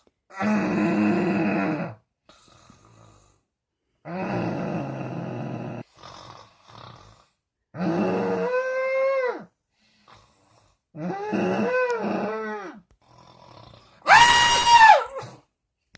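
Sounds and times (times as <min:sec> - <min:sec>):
rattling moaning snores: 0:00.3 - 0:14.0
soft breaths: 0:09.6 - 0:10.9.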